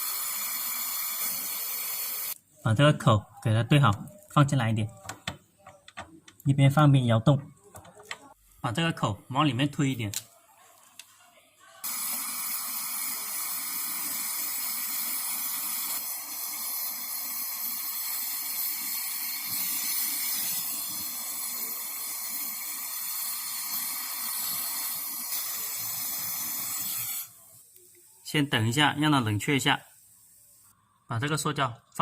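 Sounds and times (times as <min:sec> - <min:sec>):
torch flame hissing: 0:00.0 - 0:02.4, 0:11.8 - 0:27.5.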